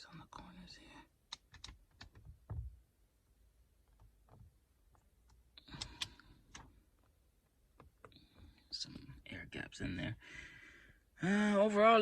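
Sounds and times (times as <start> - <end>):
dull thump on glass screen: 2.2 - 2.8.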